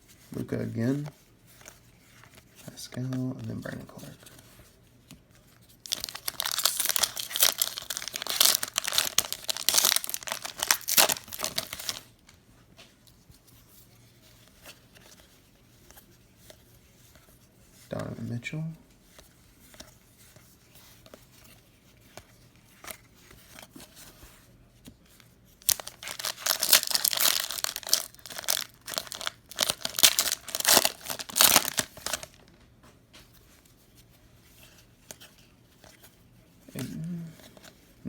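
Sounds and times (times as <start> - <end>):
plastic wrapper tearing and crinkling: 5.8 - 12.1, 25.6 - 32.5.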